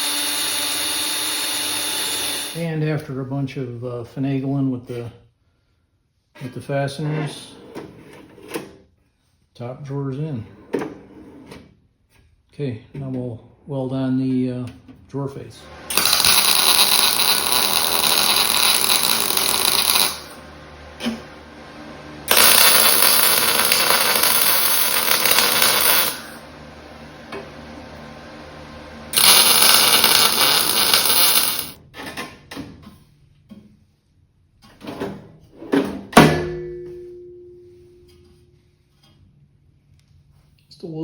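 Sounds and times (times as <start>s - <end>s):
arc welder hissing: 0.0s - 2.6s, 15.8s - 21.4s, 22.2s - 26.5s, 29.1s - 31.8s
metal clang ringing: 36.2s - 37.7s.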